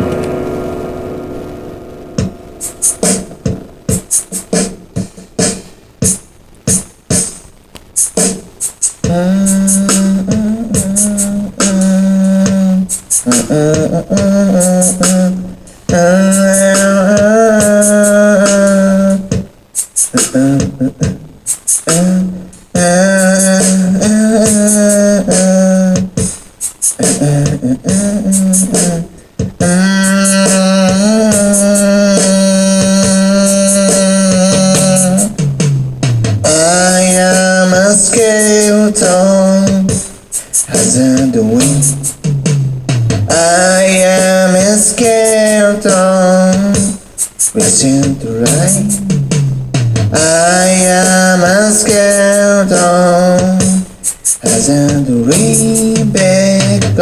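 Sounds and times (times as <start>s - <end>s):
guitar chord ringing: 0.0s - 5.0s
music with held chords: 0.0s - 57.0s
beatboxing: 2.6s - 57.0s.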